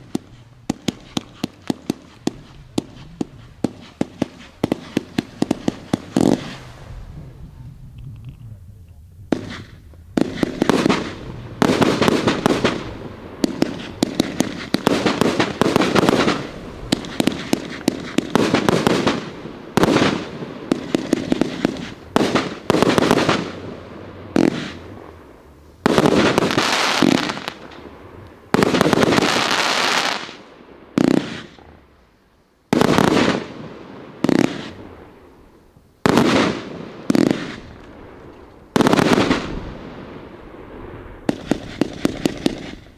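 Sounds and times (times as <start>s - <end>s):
firework blasts: 0.0s - 42.9s
firework crackles: 0.0s - 42.9s.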